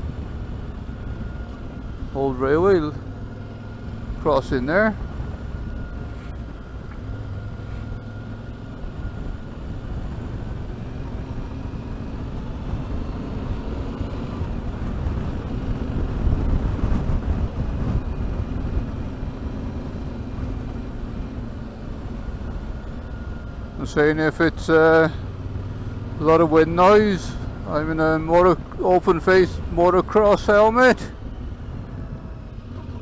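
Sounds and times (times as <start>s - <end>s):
motorcycle engine running: 0.0s - 33.0s
wind noise on microphone: 8.7s - 21.2s, 31.1s - 33.0s.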